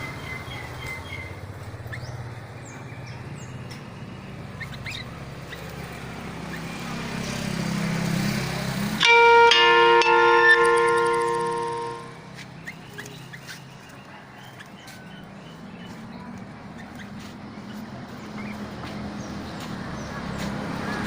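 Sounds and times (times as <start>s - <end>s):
vehicle engine rumbling: 0.0s - 21.0s
loud sustained musical notes: 9.0s - 12.3s.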